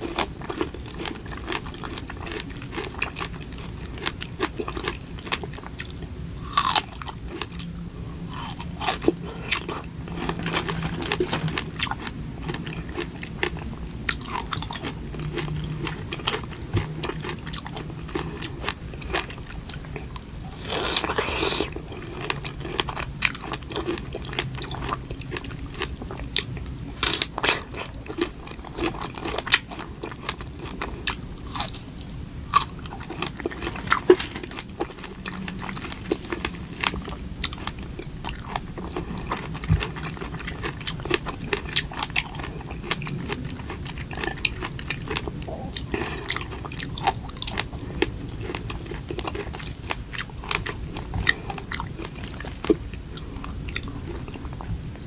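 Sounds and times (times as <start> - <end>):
person biting and chewing: 6.4 - 19.4, 20.0 - 24.0, 27.0 - 31.8.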